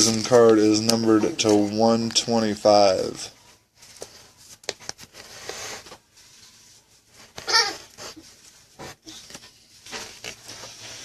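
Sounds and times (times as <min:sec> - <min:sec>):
trading cards rustling and clicking: 0:00.0 - 0:02.8.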